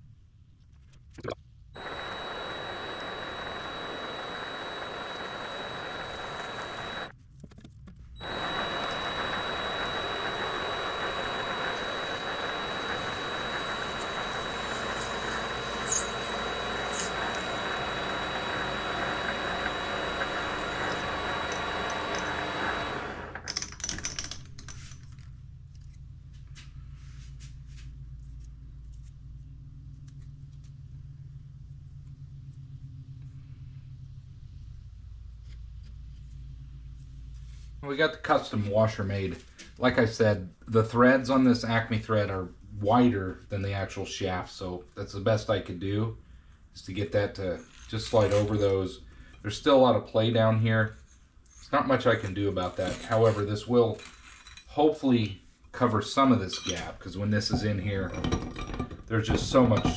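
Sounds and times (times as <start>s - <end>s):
low hum: 0.0s - 23.5s
power tool high whine: 1.8s - 7.1s, 8.2s - 23.5s.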